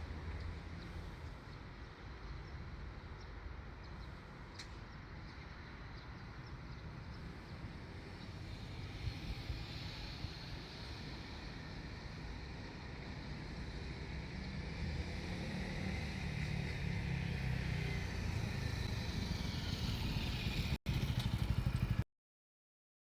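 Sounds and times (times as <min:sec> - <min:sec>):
diesel railcar rumbling past: 0:05.6 - 0:22.0.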